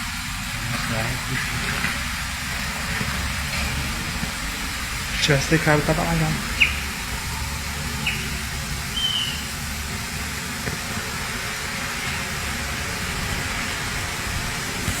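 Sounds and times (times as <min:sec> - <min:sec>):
steady rushing noise: 0:00.0 - 0:15.0
high chirps: 0:06.3 - 0:09.6.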